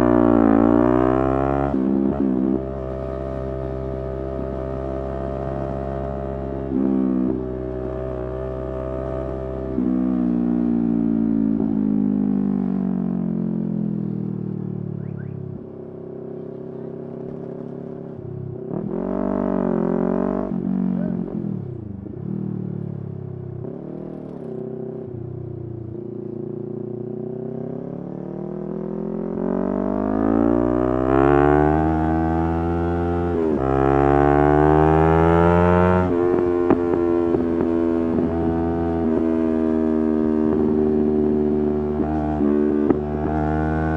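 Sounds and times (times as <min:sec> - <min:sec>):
motorcycle engine revving: 0:15.0 - 0:43.9.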